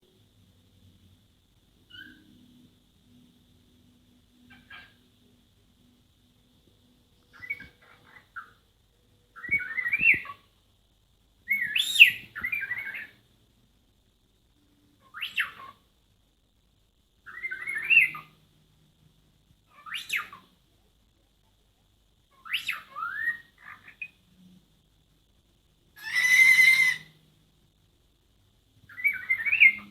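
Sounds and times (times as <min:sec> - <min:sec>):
cockatiel whistling and chirping: 0:01.9 - 0:02.6, 0:04.5 - 0:05.0, 0:07.3 - 0:08.6, 0:09.4 - 0:10.4, 0:11.5 - 0:13.2, 0:15.0 - 0:15.8, 0:17.3 - 0:18.4, 0:19.7 - 0:20.5, 0:22.3 - 0:24.2, 0:26.0 - 0:27.1, 0:28.9 - 0:29.9.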